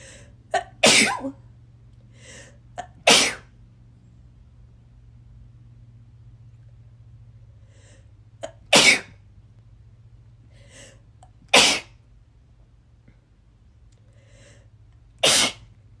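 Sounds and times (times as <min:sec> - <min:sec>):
faint in-breath: 0:00.0 - 0:00.4, 0:02.1 - 0:02.6, 0:07.5 - 0:08.2, 0:10.4 - 0:11.1, 0:14.0 - 0:14.8
person sneezing: 0:00.6 - 0:01.4, 0:03.1 - 0:03.5, 0:08.4 - 0:09.1, 0:11.5 - 0:11.9, 0:15.2 - 0:15.7.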